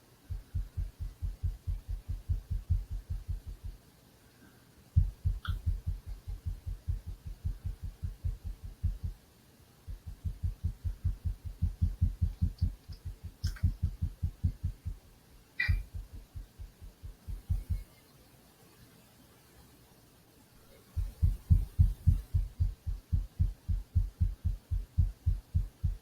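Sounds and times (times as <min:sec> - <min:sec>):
rapid low banging: 0:00.3 - 0:03.8, 0:05.0 - 0:09.1, 0:09.9 - 0:15.0, 0:15.6 - 0:17.8, 0:21.0 - 0:26.0
sharp clicks: 0:12.2 - 0:14.0.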